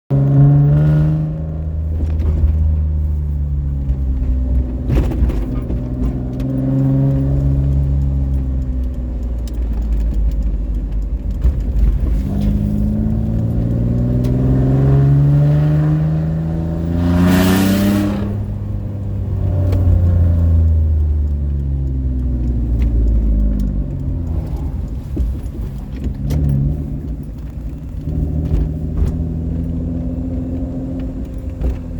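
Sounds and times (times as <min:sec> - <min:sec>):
car engine exhaust revving: 0:00.1 - 0:31.9
loud exhaust rushing: 0:11.8 - 0:21.0.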